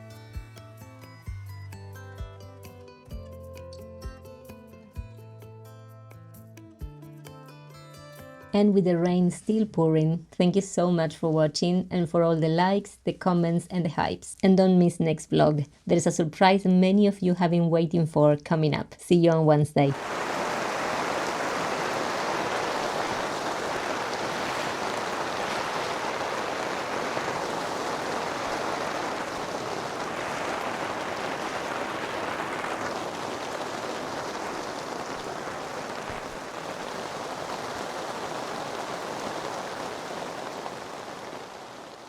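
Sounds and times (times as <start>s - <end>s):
heavy rain pouring: 19.9s - 42.0s.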